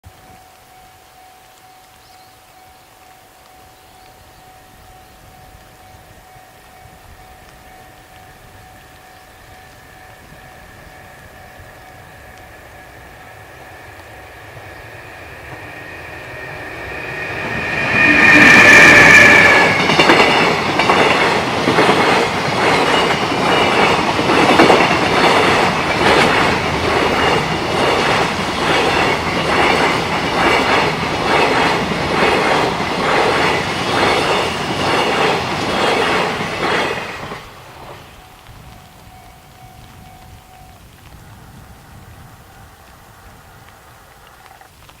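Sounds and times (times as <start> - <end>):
train wheels clattering on rail joints: 11.7 - 40.9.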